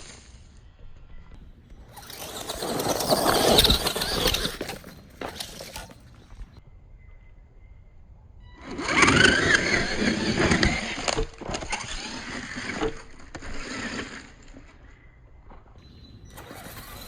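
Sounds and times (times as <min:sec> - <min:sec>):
electric motor whining: 0:01.4 - 0:06.6, 0:16.0 - 0:17.0
tyres scraping over ground: 0:01.4 - 0:06.6, 0:15.8 - 0:17.0.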